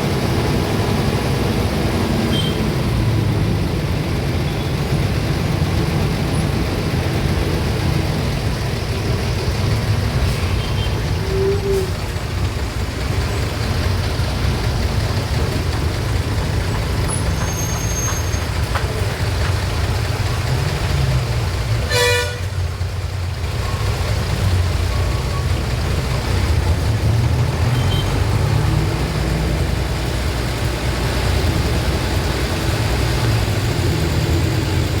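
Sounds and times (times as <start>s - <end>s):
road traffic rumble: 0.0s - 35.0s
car horn toot: 2.3s - 2.6s, 21.9s - 22.7s, 27.8s - 28.2s.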